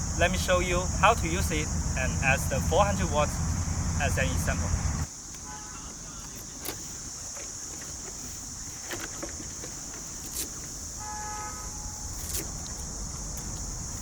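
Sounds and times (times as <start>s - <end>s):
outdoor rumble: 0.0s - 5.1s
high hiss: 0.0s - 14.0s.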